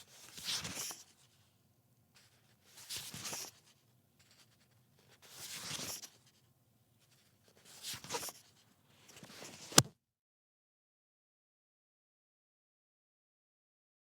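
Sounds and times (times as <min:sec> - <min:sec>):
book pages turning: 0:09.1 - 0:09.9.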